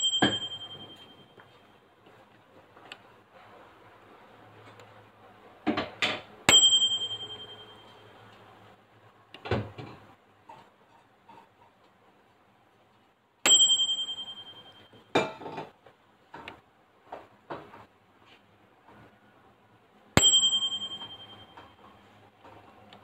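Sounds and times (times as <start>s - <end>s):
microwave timer bell ding: 0.0s - 1.6s, 6.5s - 8.2s, 13.4s - 15.1s, 20.2s - 22.0s.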